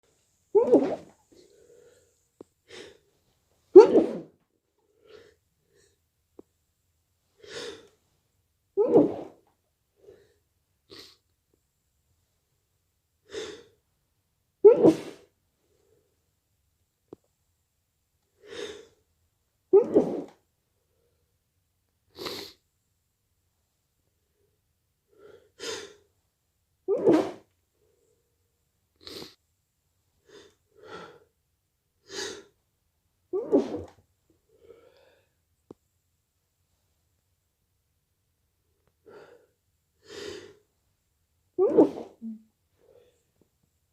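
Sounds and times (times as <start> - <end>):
loud sneeze: 0.6 - 1.1, 3.7 - 4.3, 8.8 - 9.4, 14.6 - 15.3, 19.7 - 20.4, 26.9 - 27.5, 33.3 - 34.0, 41.6 - 42.4
faint breaths: 1.1 - 3.3.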